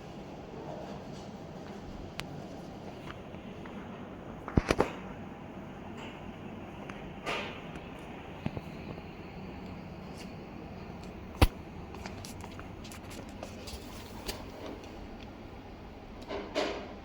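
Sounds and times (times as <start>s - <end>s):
machine hum: 0.0s - 17.0s
rustling noise: 10.0s - 15.0s.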